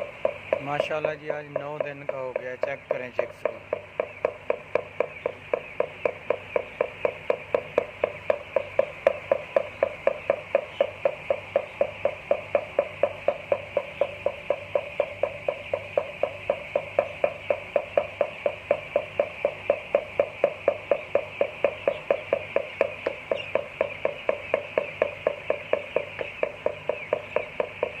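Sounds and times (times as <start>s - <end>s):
chicks peeping: 0.0s - 28.0s
rhythmic knocking: 0.0s - 28.0s.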